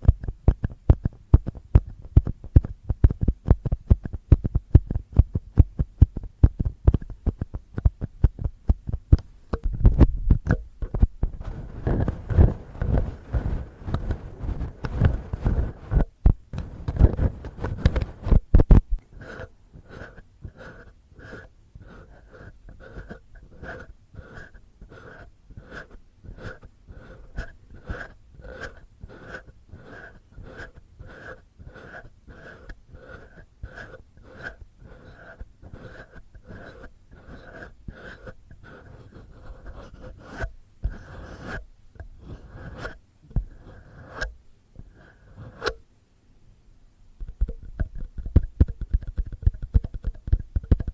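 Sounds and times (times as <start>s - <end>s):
fingertips scratching a microphone: 0.0s - 45.8s, 47.2s - 50.9s.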